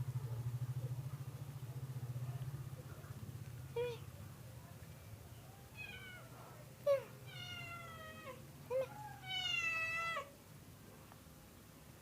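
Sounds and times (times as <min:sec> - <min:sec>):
cat meowing: 0:05.7 - 0:06.3, 0:07.0 - 0:10.3.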